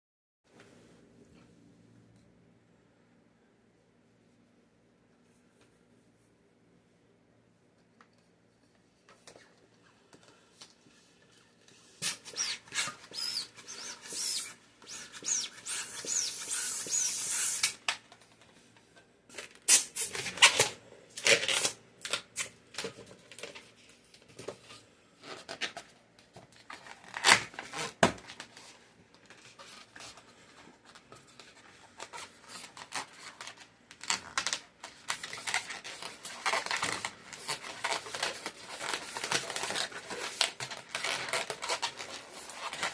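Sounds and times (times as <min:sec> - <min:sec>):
air rushing from balloon pump: 0:12.0 - 0:17.8
rubbery squeaky rubbing: 0:12.0 - 0:17.8
balloon cracks and snaps: 0:19.4 - 0:22.6.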